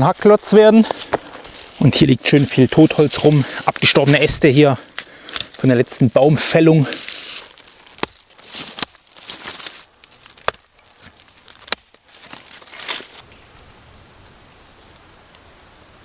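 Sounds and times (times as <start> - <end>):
rustling through forest litter: 0.0 - 13.8
dry twigs snapping: 0.8 - 13.2.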